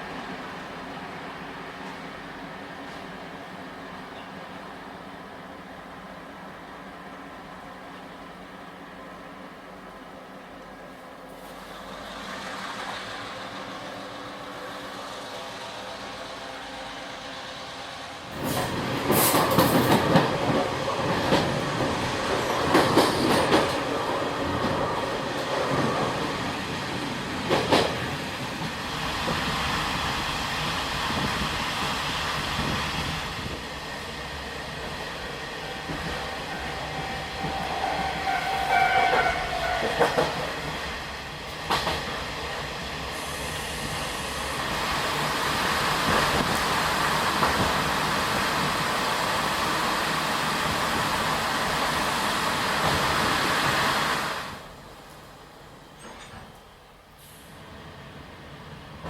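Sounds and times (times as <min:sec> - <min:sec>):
train clattering on track: 0:01.8 - 0:02.1, 0:02.8 - 0:04.4, 0:11.3 - 0:16.4, 0:18.2 - 0:57.8.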